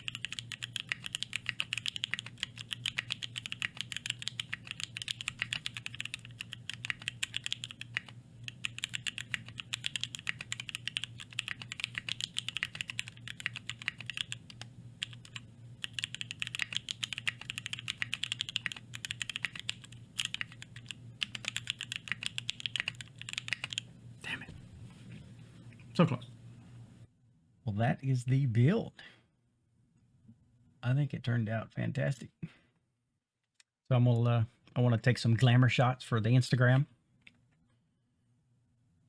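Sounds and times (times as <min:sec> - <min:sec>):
mechanical keyboard typing: 0:00.0 - 0:23.9.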